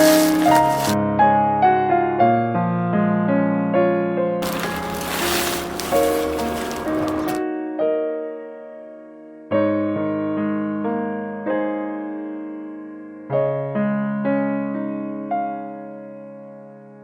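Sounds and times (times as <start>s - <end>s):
slow piano music: 0.0s - 17.0s.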